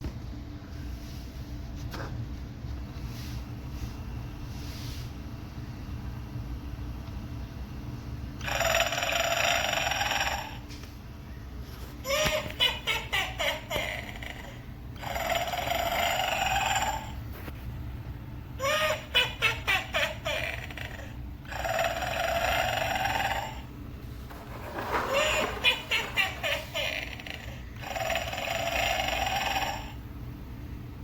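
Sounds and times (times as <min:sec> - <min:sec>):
steady low hum: 0:00.0 - 0:31.0
recorded snoring: 0:08.4 - 0:10.6, 0:27.8 - 0:30.0.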